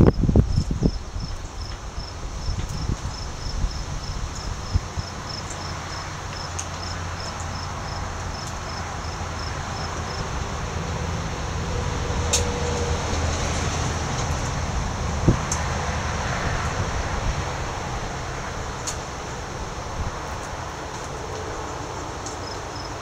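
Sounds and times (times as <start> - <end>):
insect chirping: 0.0 - 10.3, 22.4 - 23.0.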